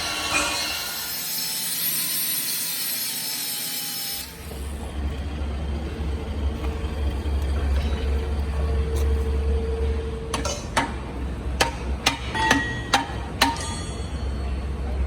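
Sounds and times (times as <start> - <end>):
steady low machine hum: 4.3 - 15.0.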